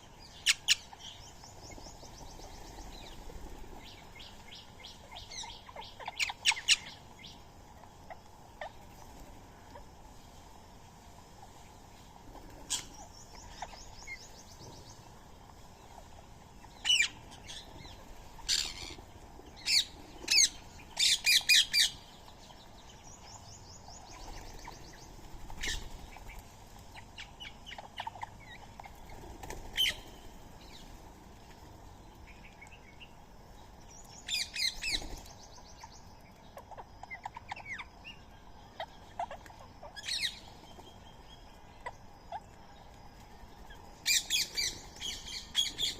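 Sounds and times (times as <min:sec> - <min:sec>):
parakeets trilling: 0:02.4 - 0:09.8, 0:15.9 - 0:22.3, 0:23.1 - 0:31.0, 0:34.2 - 0:42.6, 0:43.6 - 0:45.9
parakeets screeching: 0:18.4 - 0:19.0.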